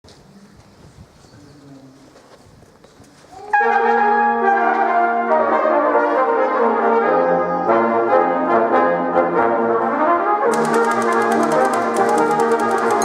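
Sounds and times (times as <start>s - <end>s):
brass chords: 3.6s - 7.2s, 7.9s - 13.0s
typewriter clicking: 10.5s - 13.0s.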